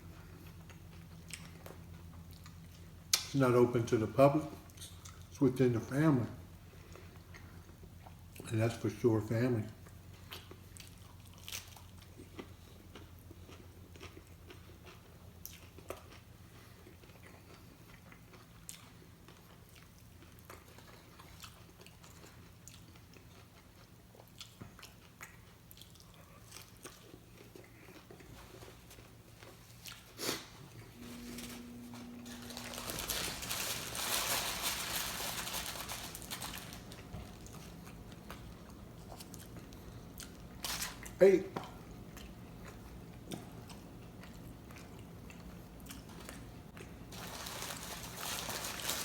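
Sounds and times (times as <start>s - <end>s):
low steady hum: 0.0s - 49.0s
chewing and biting food: 0.2s - 2.9s, 9.8s - 30.4s, 36.4s - 47.4s
rustling: 30.8s - 37.7s, 47.1s - 49.0s.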